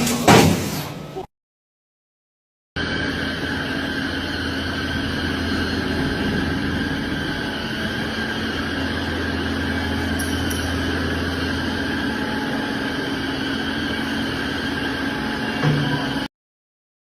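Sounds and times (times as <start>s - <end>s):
machine tool whining and humming: 2.8s - 16.3s.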